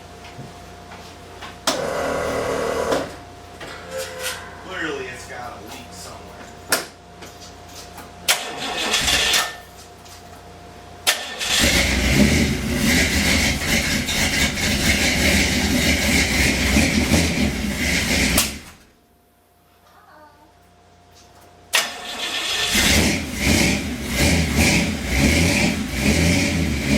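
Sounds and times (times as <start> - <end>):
truck engine cranking and running: 8.3 - 9.6, 11.0 - 18.8, 21.7 - 26.9.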